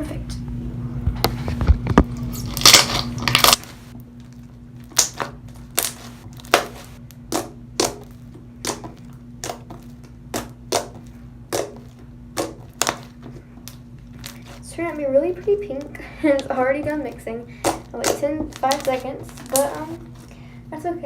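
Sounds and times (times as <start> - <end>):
slime squelching by hand: 2.2 - 20.3.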